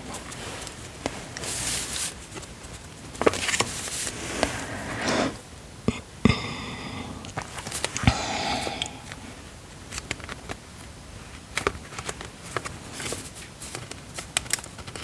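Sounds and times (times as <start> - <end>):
paper rustling: 0.0 - 5.2, 11.6 - 15.0.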